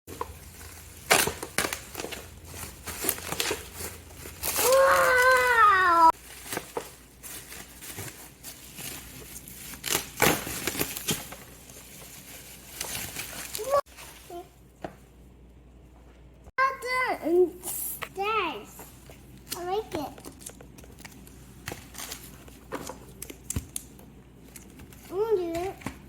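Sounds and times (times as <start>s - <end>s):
plastic and paper crinkling: 0.1s - 14.6s.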